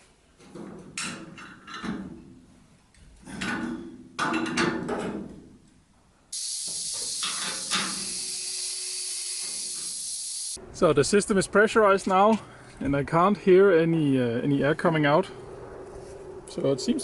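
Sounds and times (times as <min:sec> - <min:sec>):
metal knocks and clanks: 0:00.4 - 0:02.3, 0:03.2 - 0:05.5
compressed air hissing: 0:06.3 - 0:10.6.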